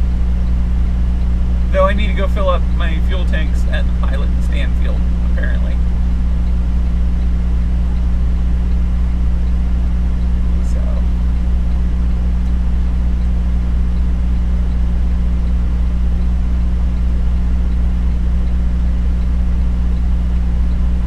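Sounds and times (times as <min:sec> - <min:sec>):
diesel truck engine running: 0:00.0 - 0:21.0.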